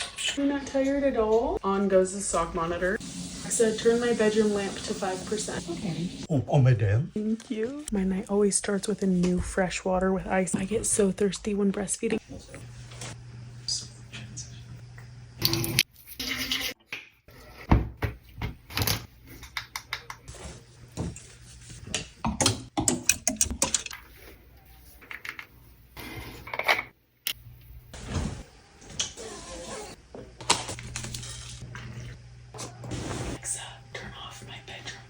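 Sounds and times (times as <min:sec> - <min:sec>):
household objects clicking and clinking: 0:22.0 - 0:24.2.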